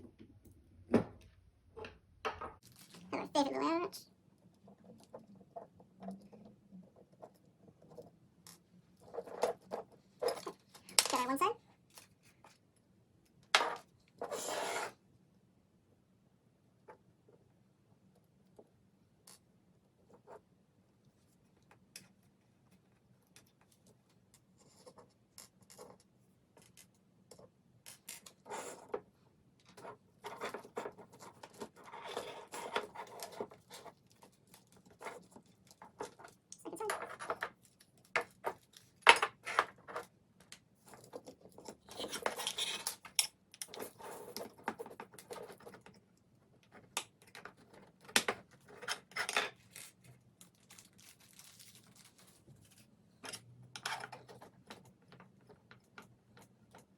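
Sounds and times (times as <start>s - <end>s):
parts and tools handled: 9.0s - 12.6s, 24.9s - 46.0s, 46.6s - 56.9s.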